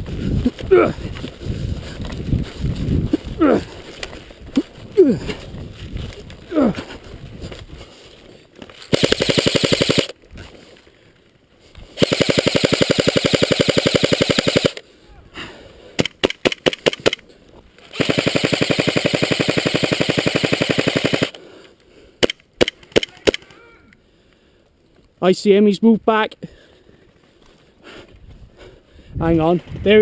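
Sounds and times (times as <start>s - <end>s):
airsoft gun firing bursts: 8.9s - 10.2s, 12.0s - 14.8s, 17.9s - 21.4s.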